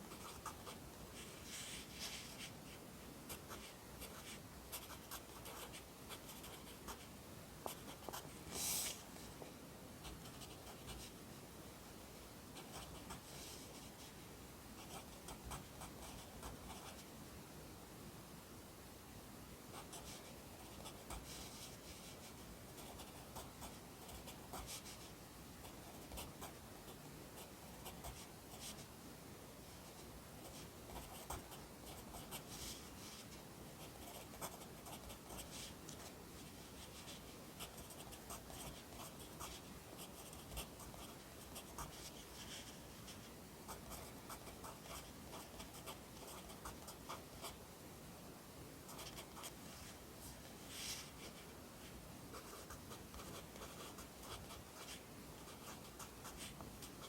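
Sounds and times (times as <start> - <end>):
pencil scratching on paper: 52.4 - 57.0.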